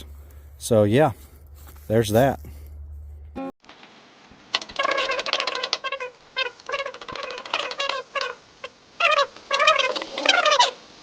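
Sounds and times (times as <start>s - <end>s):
animal high-pitched calls: 4.7s - 10.8s.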